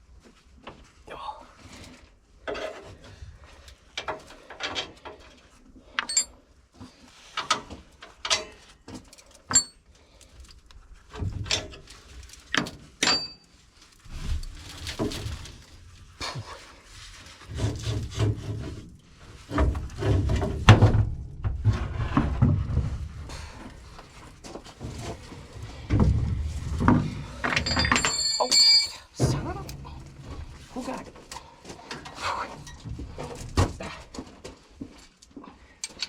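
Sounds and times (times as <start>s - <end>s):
knocks and scrapes on metal parts: 6.0s - 6.3s, 24.5s - 33.9s
low rumbling handling noise: 17.6s - 28.3s, 29.2s - 33.8s.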